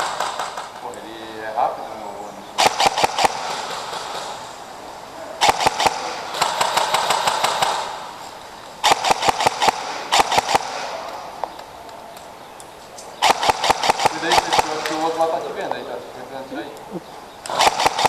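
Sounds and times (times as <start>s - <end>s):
airsoft rifle bursts: 5.4s - 8.1s, 8.8s - 11.1s, 13.2s - 15.4s, 17.4s - 18.0s.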